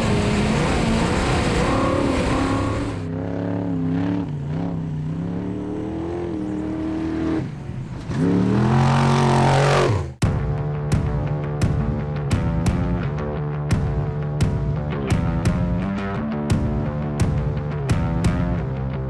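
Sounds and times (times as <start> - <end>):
truck engine revving hard: 0.0 - 10.3
music: 10.2 - 19.0.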